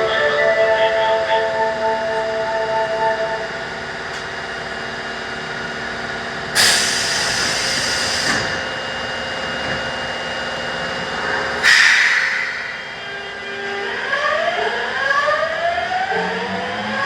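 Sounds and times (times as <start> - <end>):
subway car electrical hum: 0.0 - 17.0
compressed air hissing: 6.6 - 8.6, 11.6 - 13.4.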